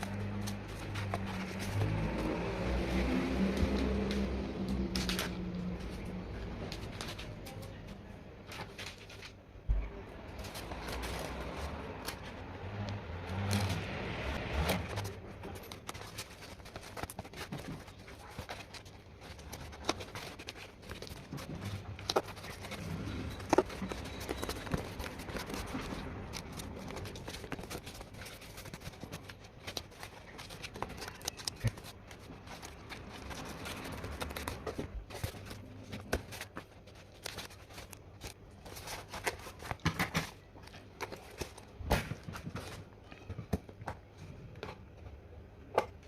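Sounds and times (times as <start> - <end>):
handling clicks taps and scrapes: 14.6 - 46.0.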